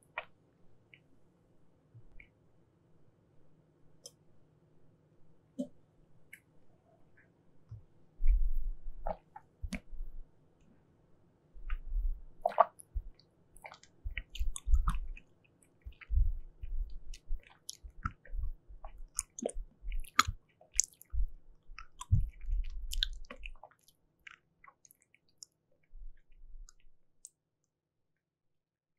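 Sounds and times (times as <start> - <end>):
mouth clicks: 11.7 - 25.6
chewing jelly: 11.7 - 27.4.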